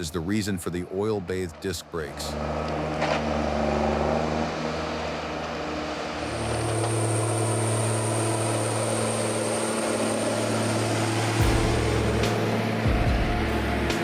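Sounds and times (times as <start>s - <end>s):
diesel engine running: 0.0s - 14.0s
high steady whine: 6.1s - 14.0s.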